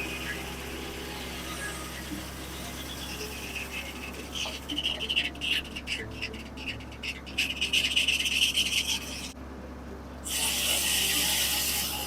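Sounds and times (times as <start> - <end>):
low hum of mill: 0.0 - 12.0
saw blade cutting log: 2.9 - 9.4, 10.3 - 12.0.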